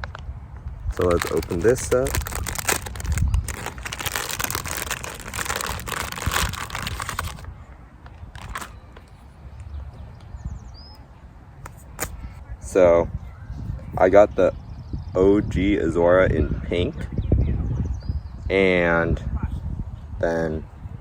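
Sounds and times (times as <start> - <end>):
packaging crinkling and rustling: 0.9 - 7.5, 8.3 - 8.7.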